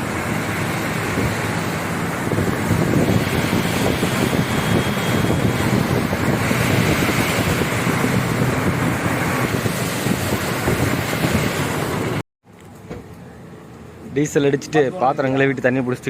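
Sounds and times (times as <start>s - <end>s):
lorry engine and road rumble: 0.0s - 16.0s
wind buffeting microphone: 0.1s - 12.2s.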